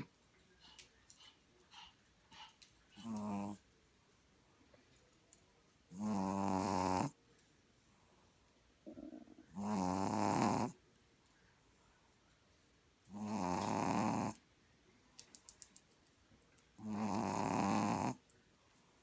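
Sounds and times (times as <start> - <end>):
puppy snoring: 2.4 - 3.6, 5.9 - 7.2, 8.8 - 10.8, 13.1 - 14.4, 16.8 - 18.2.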